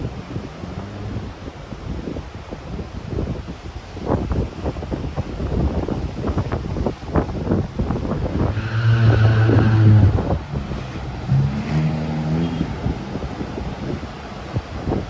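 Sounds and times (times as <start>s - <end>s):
wind buffeting microphone: 0.0s - 15.0s
vehicle engine revving: 8.1s - 15.0s.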